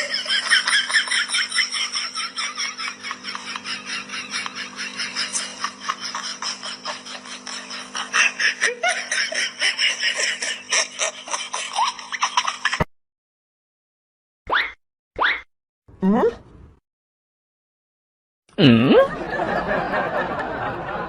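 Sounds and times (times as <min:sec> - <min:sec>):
person laughing: 0:00.0 - 0:12.8, 0:16.0 - 0:16.4, 0:18.6 - 0:19.4.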